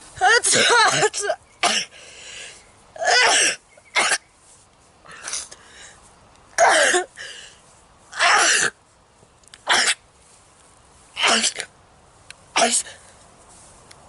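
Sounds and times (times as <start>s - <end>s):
person sneezing: 8.2s - 8.8s, 11.2s - 11.7s, 12.6s - 13.0s.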